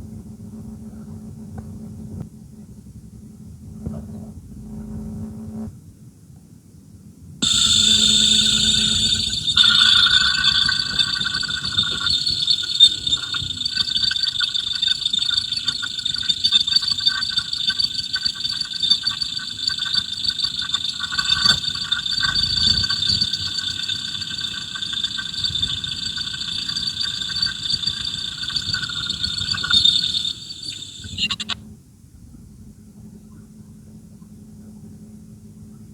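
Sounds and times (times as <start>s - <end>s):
constant high hiss: 7.4s - 31.6s
fuel injector ticking: 7.4s - 31.6s.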